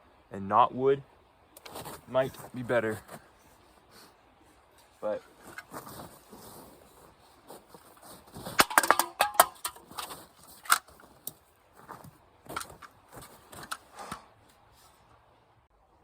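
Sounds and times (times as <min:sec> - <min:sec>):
hard objects clicking and clinking: 0:08.6 - 0:11.0.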